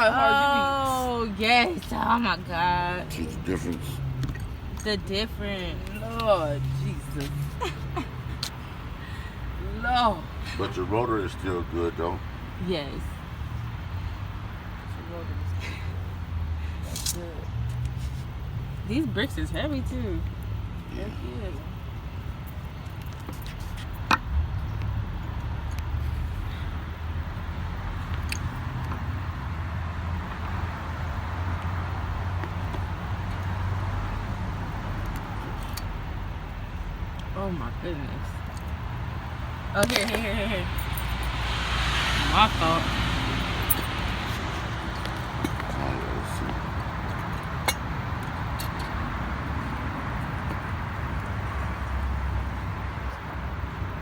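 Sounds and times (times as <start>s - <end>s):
outdoor background rumble and hiss: 0.0s - 54.0s.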